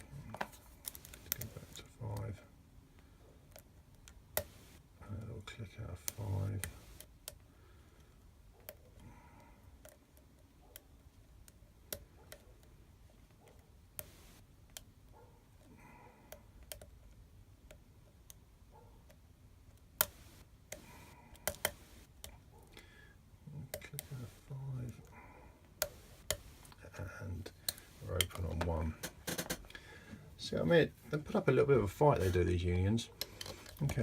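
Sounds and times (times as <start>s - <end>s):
lock pick clicking and scraping: 33.2s - 34.0s.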